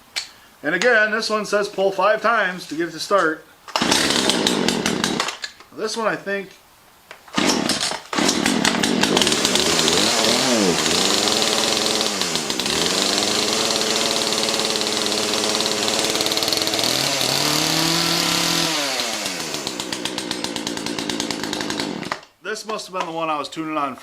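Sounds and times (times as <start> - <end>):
chainsaw starting and revving: 3.7 - 5.5, 7.3 - 22.3.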